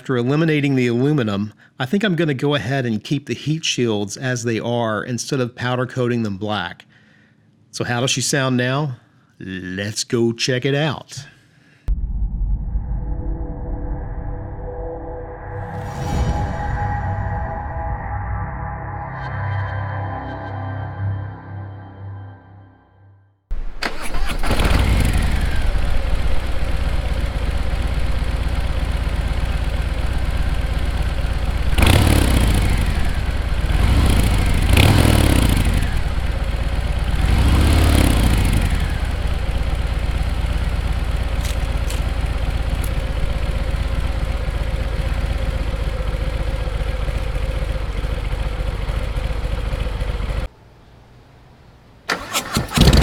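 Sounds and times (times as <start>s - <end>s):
motorcycle throttle blips: 23.9s - 50.4s
motorcycle engine idling: 24.6s - 50.5s.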